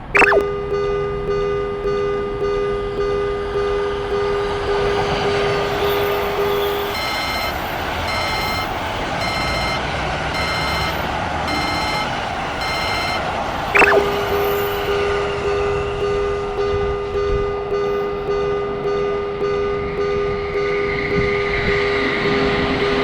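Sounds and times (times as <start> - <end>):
electronic crossing beep: 0.0 - 21.8
level-crossing bell ringing: 5.7 - 13.2, 13.8 - 15.2.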